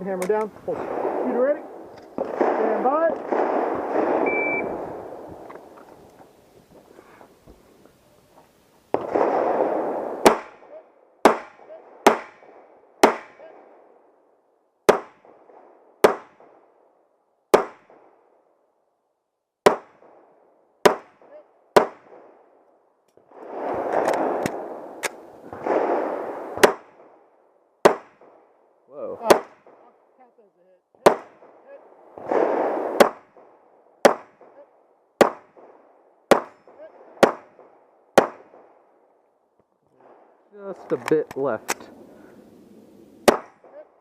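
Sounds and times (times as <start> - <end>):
handgun shots: 43.3 - 43.7.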